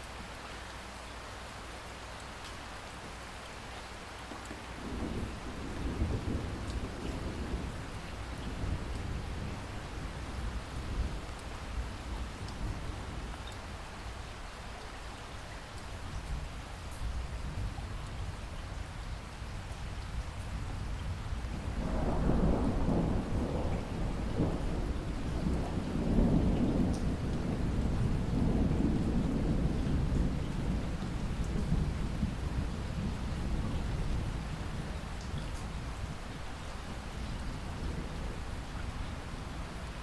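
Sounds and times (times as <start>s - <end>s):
steady rain falling: 0.0s - 40.0s
distant thunder rumbling: 4.6s - 13.5s, 20.8s - 40.0s.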